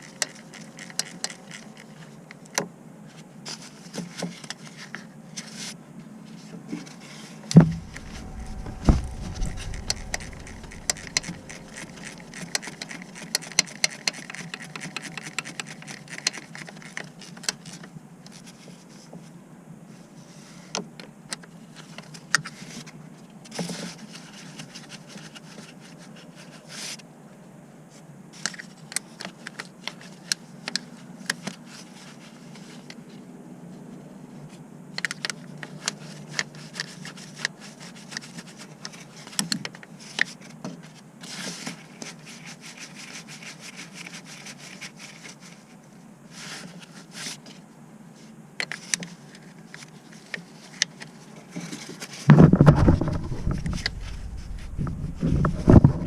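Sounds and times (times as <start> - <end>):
heavy thump: 7.6 - 12.8, 52.3 - 56.0
scraping and rubbing: 7.6 - 14.2, 52.3 - 56.0.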